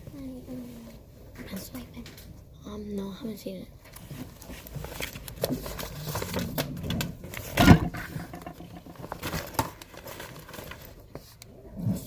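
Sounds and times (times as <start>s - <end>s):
clicks and knocks: 6.8s - 9.1s.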